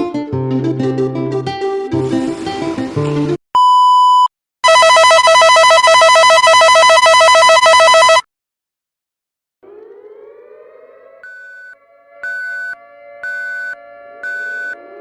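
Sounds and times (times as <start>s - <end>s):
short steady beep: 3.6s - 8.2s
rising siren tone: 9.6s - 15.0s
warbling two-tone alert signal: 11.2s - 15.0s.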